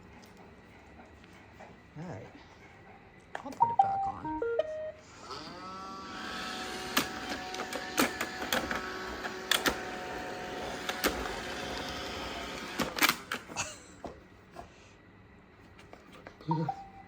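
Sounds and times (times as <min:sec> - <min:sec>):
robot vacuum motor whirring: 0:05.1 - 0:13.5.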